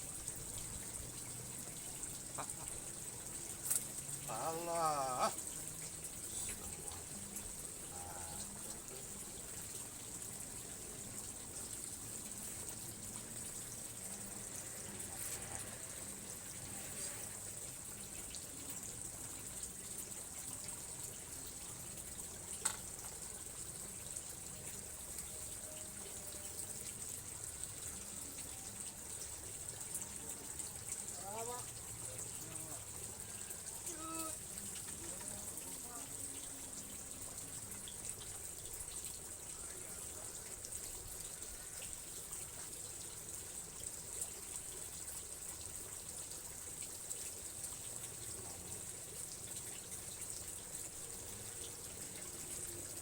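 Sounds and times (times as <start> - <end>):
running water hissing: 0.0 - 53.0
faint distant voices: 0.2 - 44.9.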